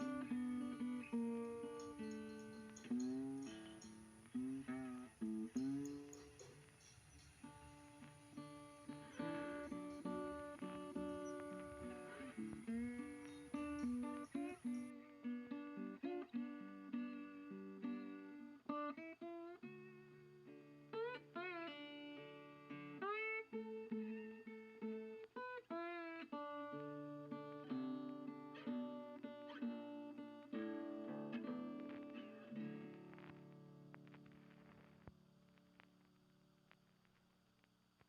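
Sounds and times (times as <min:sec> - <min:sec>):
plucked guitar melody: 0:00.0 - 0:35.9.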